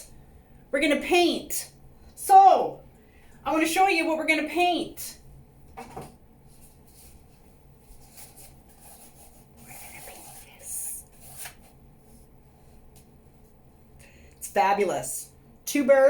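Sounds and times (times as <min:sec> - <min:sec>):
canvas painting being handled: 0:05.8 - 0:13.6
scrape: 0:06.5 - 0:12.8.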